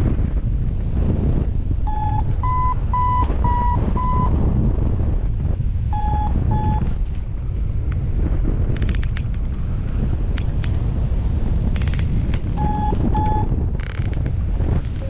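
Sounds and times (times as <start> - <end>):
wind buffeting microphone: 0.0 - 15.0
variometer beeps: 1.9 - 4.4, 5.9 - 7.0, 12.6 - 13.5.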